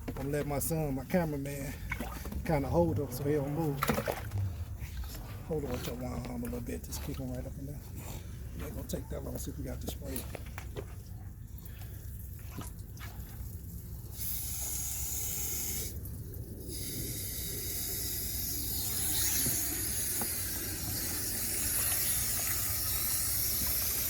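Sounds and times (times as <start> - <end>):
water hissing from hose nozzle: 14.1 - 24.0.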